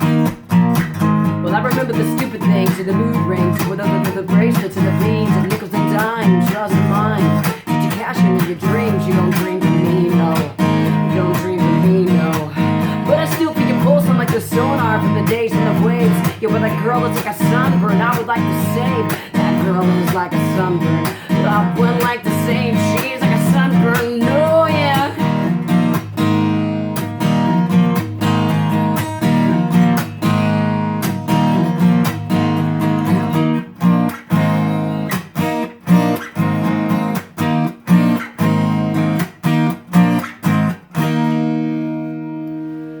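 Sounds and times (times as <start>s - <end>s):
acoustic guitar strummed chords: 0.0s - 43.0s
person singing: 1.3s - 26.0s.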